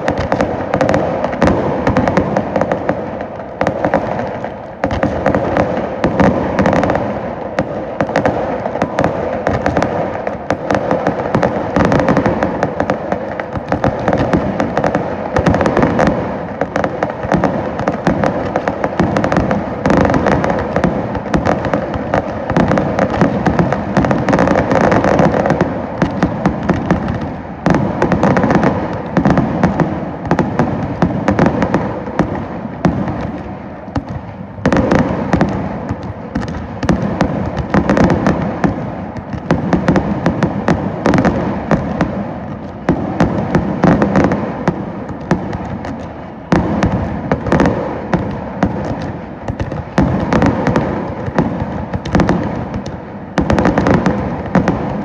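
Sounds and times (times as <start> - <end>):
fireworks bangs and crackling: 0.0 - 55.0.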